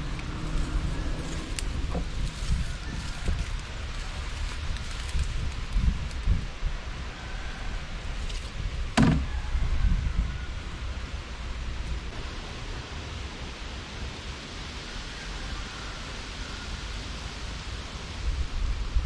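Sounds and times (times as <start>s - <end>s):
low rumble: 0.0s - 6.9s
rushing outdoor noise: 0.0s - 19.0s.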